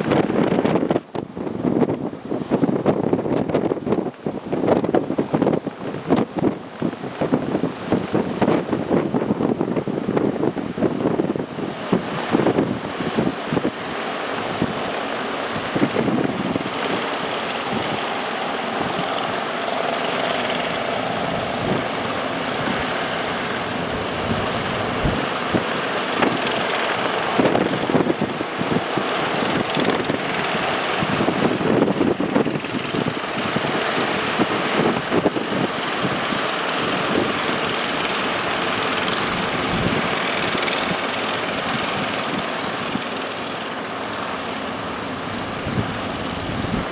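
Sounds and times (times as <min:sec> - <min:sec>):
boat engines droning: 0:00.0 - 0:46.9
wind buffeting microphone: 0:00.0 - 0:46.9.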